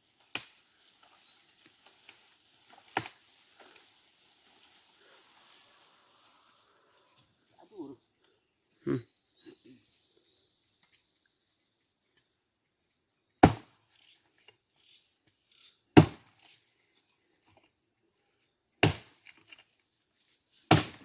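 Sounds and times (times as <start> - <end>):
crickets droning: 0.0 - 21.0
axe chopping dry wood: 13.4 - 13.7, 16.0 - 16.3, 18.8 - 19.2, 20.7 - 21.0.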